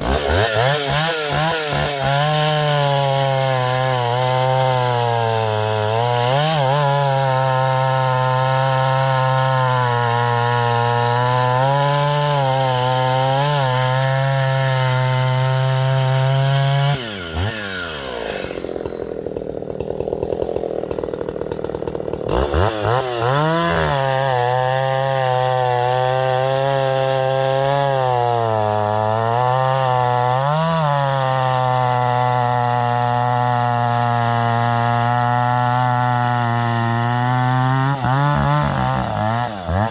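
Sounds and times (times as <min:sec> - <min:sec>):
chainsaw idling roughly: 0:00.0 - 0:06.4, 0:14.7 - 0:26.4, 0:31.4 - 0:39.9
chainsaw cutting wood: 0:00.0 - 0:39.9.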